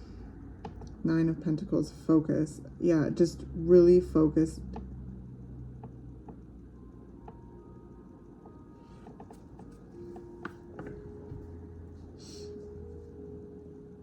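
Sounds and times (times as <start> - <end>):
ambient music with held notes: 4.8 - 14.0
light taps and clicks: 8.4 - 11.5.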